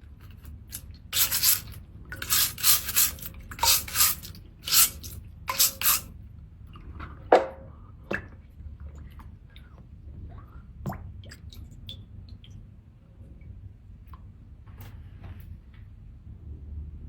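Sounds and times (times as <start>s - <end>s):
seashell being scrubbed: 0.6s - 6.1s.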